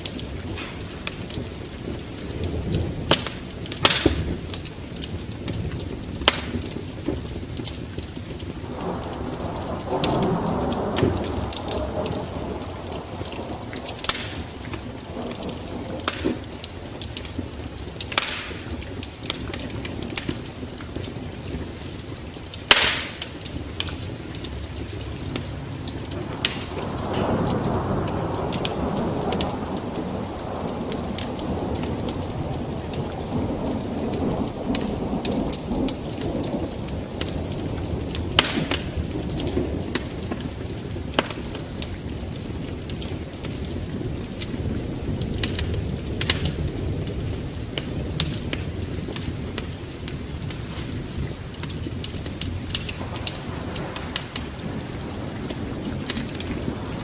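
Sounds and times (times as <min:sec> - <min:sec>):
low fire rumble: 0:00.0 - 0:57.0
low rush of flame: 0:00.0 - 0:57.0
wood fire crackling: 0:00.0 - 0:57.0
sharp pops: 0:03.1 - 0:04.3, 0:14.0 - 0:14.8, 0:16.0 - 0:16.5, 0:18.0 - 0:18.9, 0:22.7 - 0:23.3.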